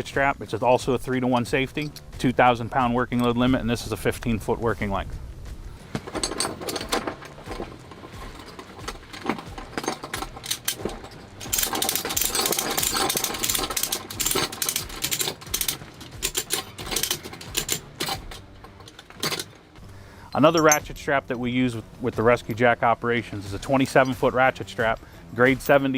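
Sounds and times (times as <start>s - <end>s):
ratchet strap clicking and rattling: 5.8s - 20.8s.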